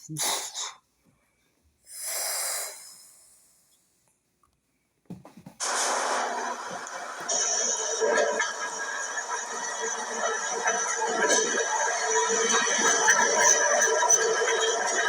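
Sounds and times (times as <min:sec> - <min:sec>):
air hiss: 0:01.9 - 0:03.8.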